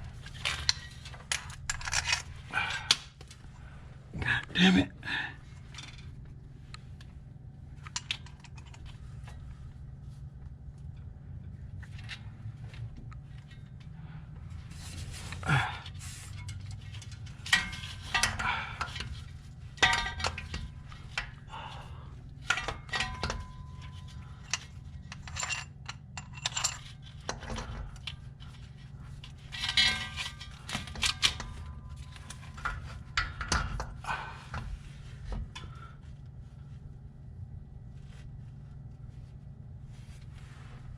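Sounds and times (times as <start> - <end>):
steady low hum: 0.0 - 40.9
metal tools clinking and knocking: 0.2 - 2.9, 16.3 - 21.8, 22.4 - 28.6, 29.2 - 34.7.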